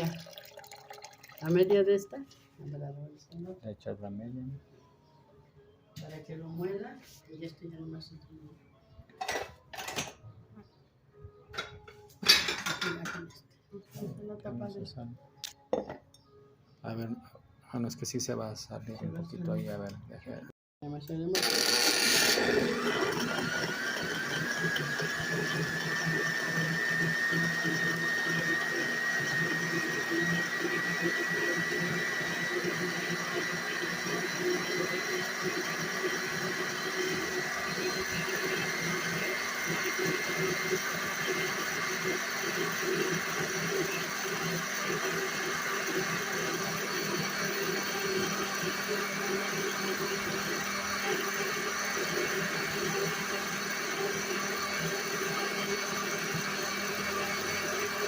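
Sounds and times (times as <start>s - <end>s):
electric blender running: 0.0s - 2.0s, 21.3s - 58.0s.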